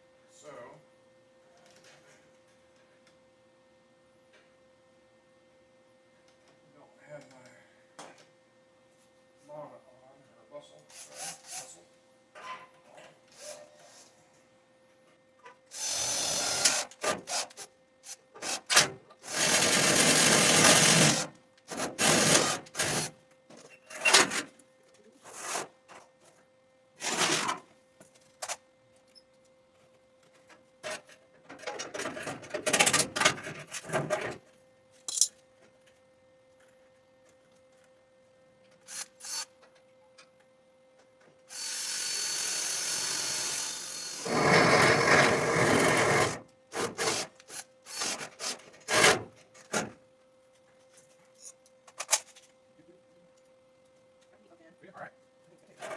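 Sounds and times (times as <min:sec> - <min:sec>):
faint steady hum: 0:00.0 - 0:17.0, 0:17.6 - 0:55.9
scraping and rubbing: 0:44.3 - 0:47.2.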